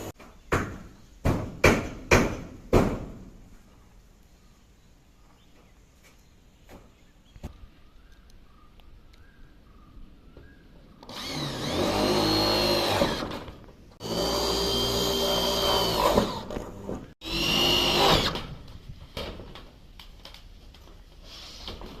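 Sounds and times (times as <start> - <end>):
power tool motor whining: 11.0 - 18.4.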